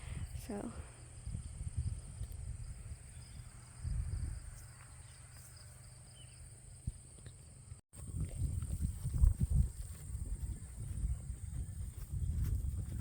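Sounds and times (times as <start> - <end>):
wind rumble on microphone: 0.0 - 4.8, 8.0 - 13.0.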